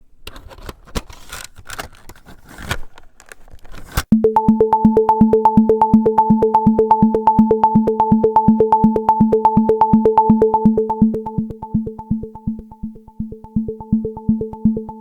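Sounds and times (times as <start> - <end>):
synthesizer plucky notes pulsing: 4.1 - 15.0.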